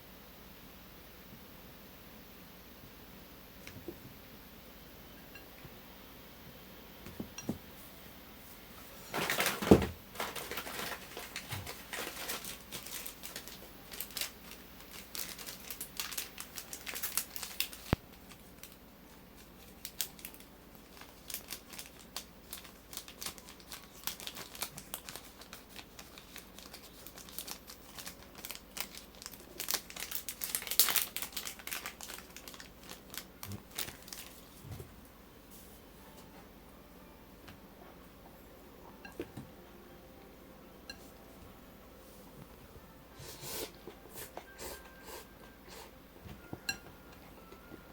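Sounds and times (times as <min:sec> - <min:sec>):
packaging crinkling and tearing: 0:09.1 - 0:18.8, 0:19.4 - 0:34.6.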